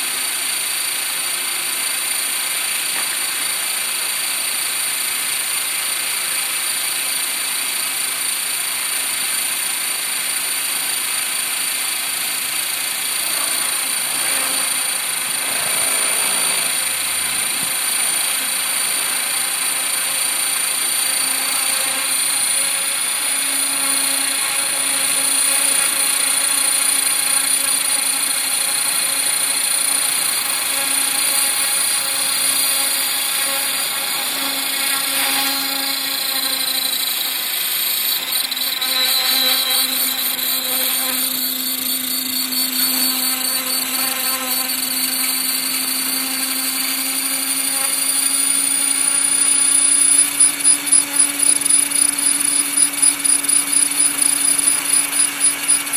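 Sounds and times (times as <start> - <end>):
high motor whine: 0.0 - 55.9
buzzing vibration: 11.8 - 55.9
rotor noise: 12.6 - 55.9.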